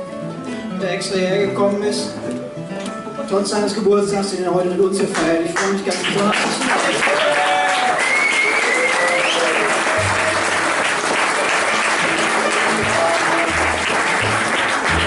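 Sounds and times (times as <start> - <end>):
bass notes and plucked strings: 0.0 - 5.0, 12.0 - 15.0
audience applauding: 5.2 - 15.0.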